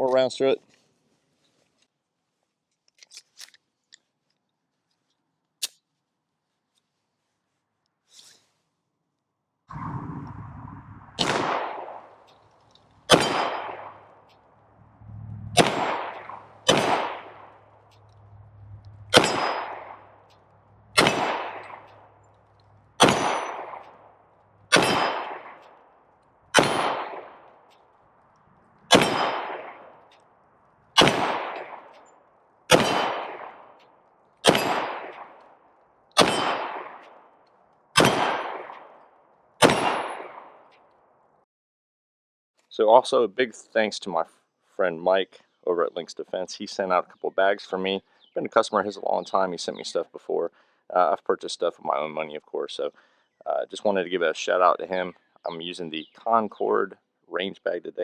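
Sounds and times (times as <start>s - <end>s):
pistol shots: 11.2s - 12.3s, 13.0s - 14.3s, 15.6s - 25.8s, 26.5s - 27.6s, 28.9s - 30.1s, 31.0s - 32.0s, 32.7s - 33.8s, 34.4s - 37.3s, 38.0s - 39.0s, 39.6s - 40.6s.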